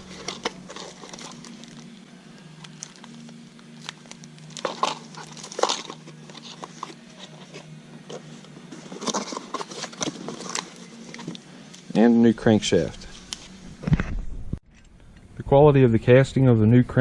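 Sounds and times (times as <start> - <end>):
parts rustling and clicking: 0.0 - 2.0, 2.6 - 12.0
steady low hum: 0.0 - 17.0.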